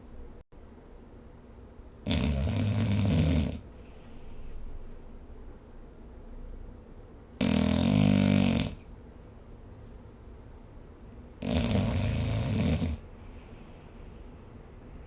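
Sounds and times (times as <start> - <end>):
person snoring: 2.1 - 3.7, 7.4 - 8.9, 11.4 - 13.0.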